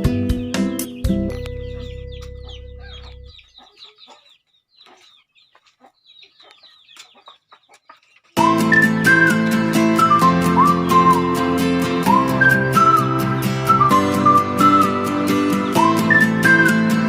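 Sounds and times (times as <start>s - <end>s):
background music: 0.0s - 3.4s, 8.4s - 17.0s
chickens clucking: 0.0s - 12.2s.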